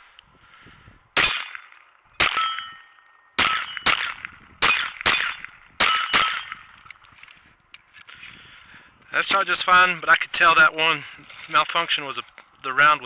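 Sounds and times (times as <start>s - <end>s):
pistol shots: 1.2s - 2.7s, 3.4s - 6.6s
short metallic ring: 2.2s - 4.0s, 4.6s - 7.0s.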